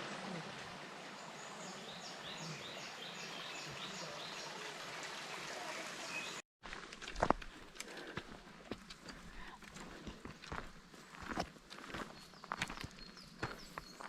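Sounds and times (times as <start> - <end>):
mountain stream rushing: 0.0 - 6.4
bird chirping: 12.0 - 14.0.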